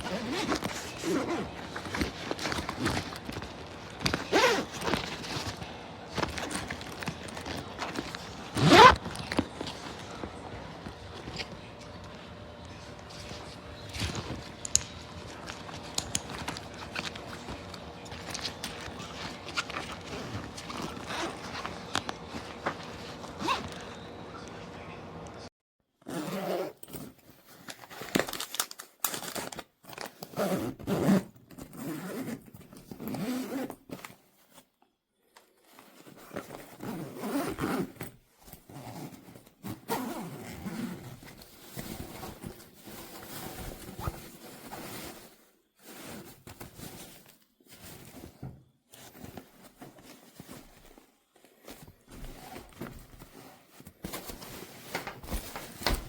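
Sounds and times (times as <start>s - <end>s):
zippers opening and closing: 0.0s - 10.3s, 13.0s - 24.0s, 26.0s - 27.2s, 30.2s - 34.0s, 36.1s - 42.5s
bag fabric rustling: 0.0s - 24.2s, 26.1s - 34.6s, 35.5s - 56.0s.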